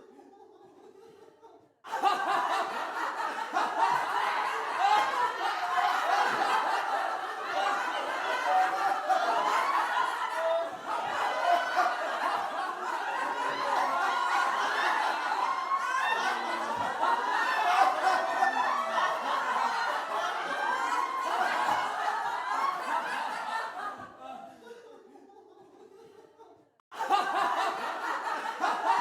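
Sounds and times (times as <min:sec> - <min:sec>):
group of people laughing: 0:00.0 - 0:29.0.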